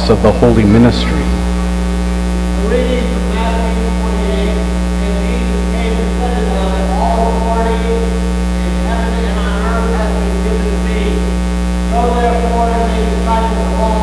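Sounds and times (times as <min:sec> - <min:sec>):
faint voice speaking: 0:00.0 - 0:01.5
electrical mains hum: 0:00.0 - 0:14.0.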